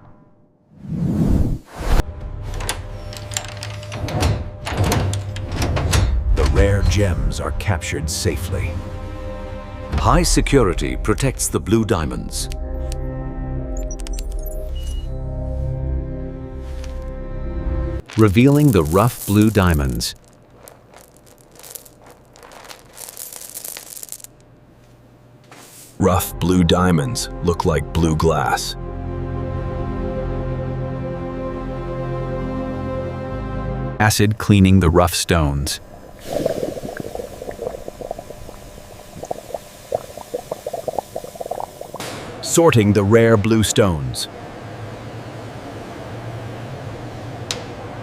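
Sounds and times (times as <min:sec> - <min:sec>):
acid bath bubbling: 0:35.6 - 0:42.5.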